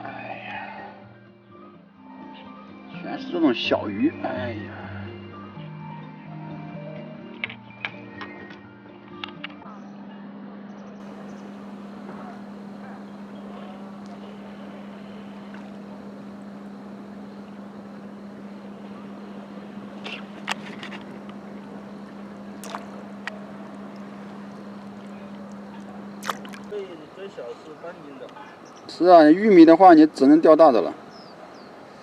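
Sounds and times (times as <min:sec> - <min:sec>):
outdoor background hiss: 0:11.0 - 0:32.0
steady motor hum: 0:11.0 - 0:32.0
sharp clicks: 0:19.9 - 0:26.8.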